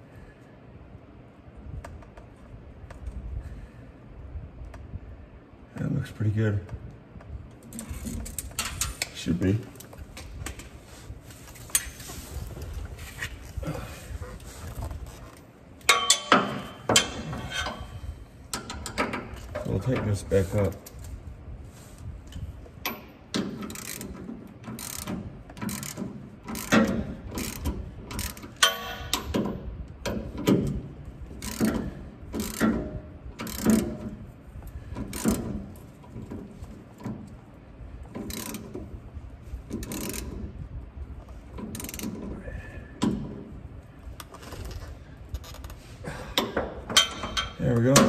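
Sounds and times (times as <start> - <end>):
wrench clicking and clanking on bolt: 15.8 - 17.8, 18.5 - 21.0, 22.8 - 30.8, 31.4 - 34.2, 35.0 - 36.4, 38.1 - 38.8, 39.7 - 40.5, 41.6 - 42.3, 46.4 - 48.0.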